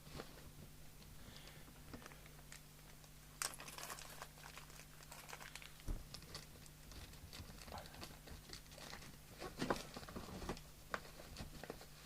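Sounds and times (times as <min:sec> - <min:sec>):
crinkly clicks: 0:02.0 - 0:09.2
packets rustling: 0:03.4 - 0:12.0.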